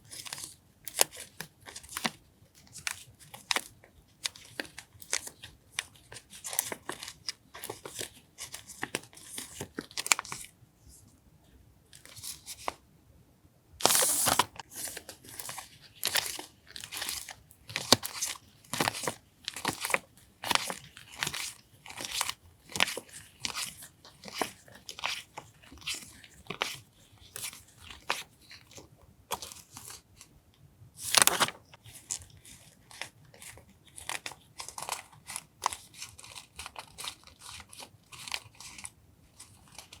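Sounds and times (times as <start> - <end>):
paper packaging crinkling: 13.8 - 28.2, 31.0 - 40.0.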